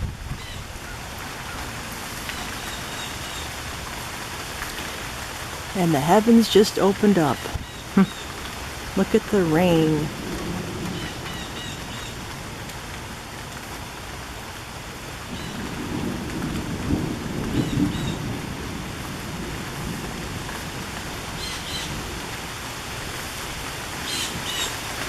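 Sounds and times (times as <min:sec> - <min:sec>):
heavy rain pouring: 0:00.0 - 0:25.0
thunder rumble: 0:08.6 - 0:13.3, 0:15.2 - 0:23.7
blue jay calls: 0:11.0 - 0:12.2, 0:21.4 - 0:22.0, 0:24.1 - 0:24.8.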